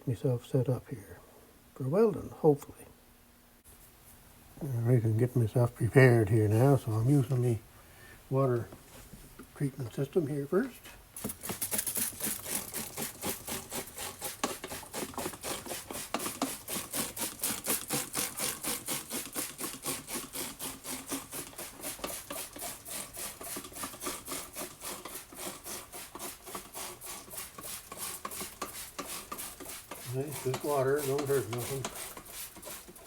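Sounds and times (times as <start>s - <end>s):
rapid rubbing by hand: 11.2s - 33.0s.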